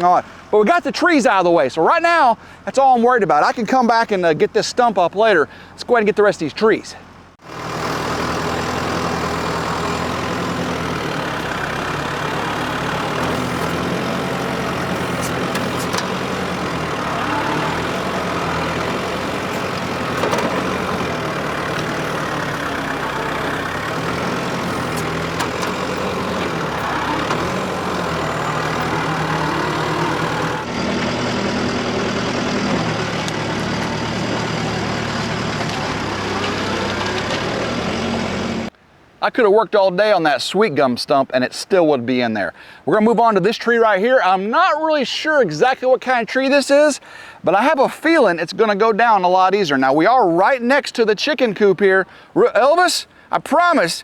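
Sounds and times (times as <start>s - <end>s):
tractor diesel engine running: 3.4s - 38.7s.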